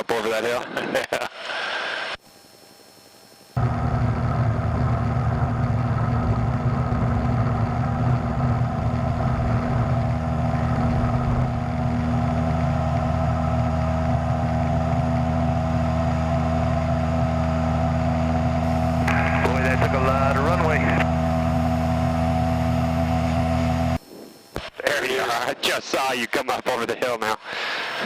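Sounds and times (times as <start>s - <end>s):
propeller plane engine drone: 0.0s - 28.0s.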